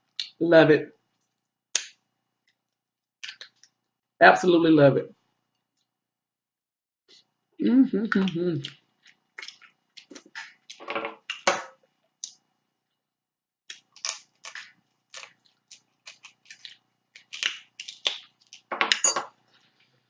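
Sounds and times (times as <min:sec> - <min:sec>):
crab shells cracking: 0:03.2 - 0:03.8, 0:08.2 - 0:11.5, 0:13.7 - 0:19.0.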